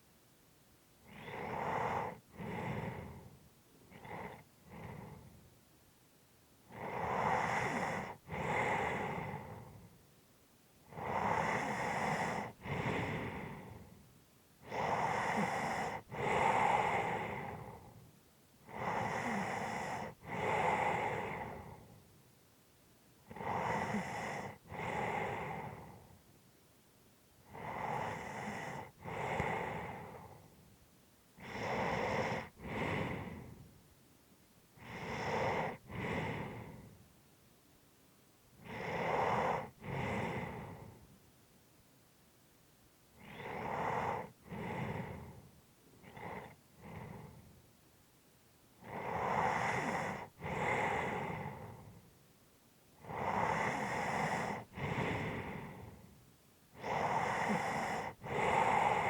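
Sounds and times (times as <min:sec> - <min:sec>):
person breathing heavily: 0:11.2 - 0:14.0, 0:27.6 - 0:30.6, 0:31.4 - 0:33.7, 0:34.8 - 0:37.0, 0:38.6 - 0:41.1, 0:53.1 - 0:56.0, 0:56.8 - 0:59.0.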